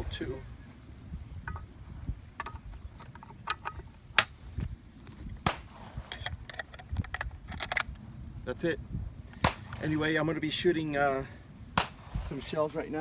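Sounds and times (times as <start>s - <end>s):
gun parts clicking into place: 2.4s - 4.4s, 6.0s - 8.0s.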